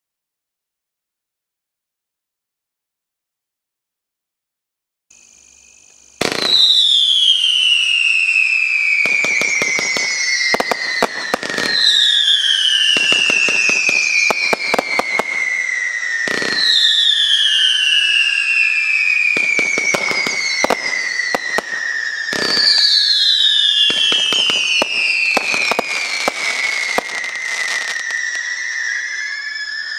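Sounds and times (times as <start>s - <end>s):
sharp firework crack: 6.2s - 8.0s, 8.8s - 28.6s
firework crackling bangs: 6.2s - 29.2s
firework howling whistles: 6.2s - 29.9s.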